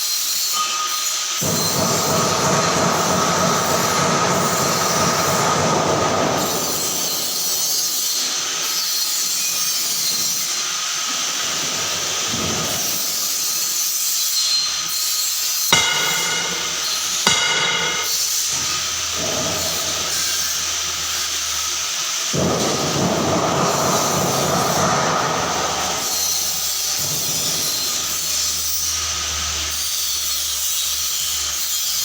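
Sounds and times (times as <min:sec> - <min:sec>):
machine hissing and rumbling: 0:01.2 - 0:32.0
short sharp knocks: 0:15.7 - 0:21.6.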